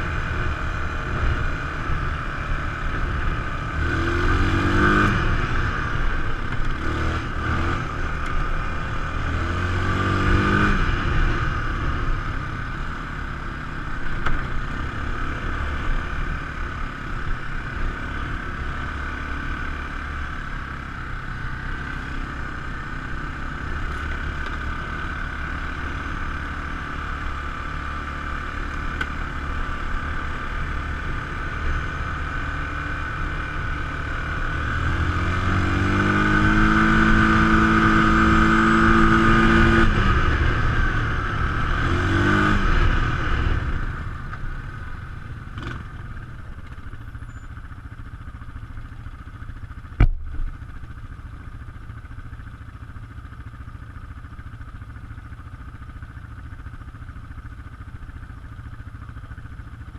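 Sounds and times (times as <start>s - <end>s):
atv engine revving: 0.0s - 59.9s.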